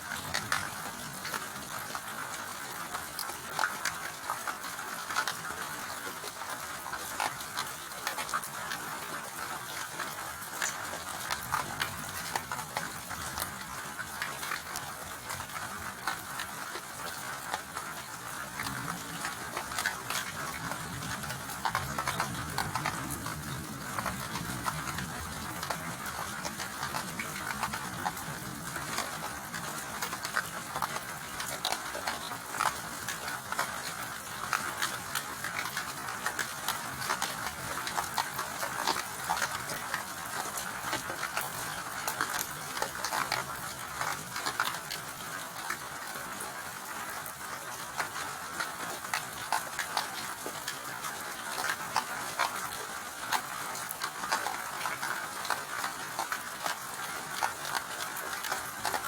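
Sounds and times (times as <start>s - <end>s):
raindrops ticking: 0.0s - 59.0s
steady rain hiss: 0.0s - 59.0s.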